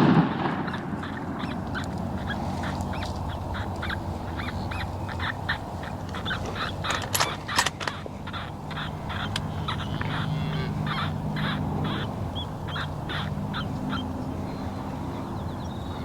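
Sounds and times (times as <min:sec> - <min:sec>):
sharp clicks: 0:01.0 - 0:10.2
electronic call playing mouse squeaks: 0:01.1 - 0:12.1.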